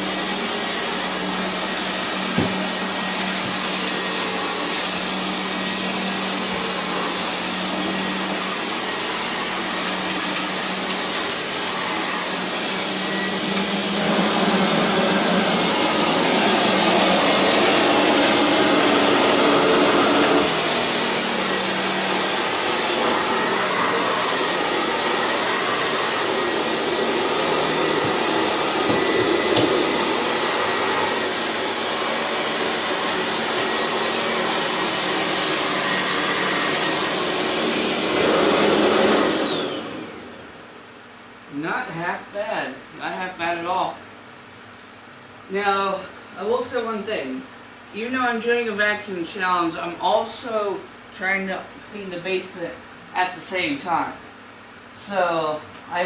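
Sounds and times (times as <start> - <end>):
upright vacuum cleaner running: 0.0 - 41.8.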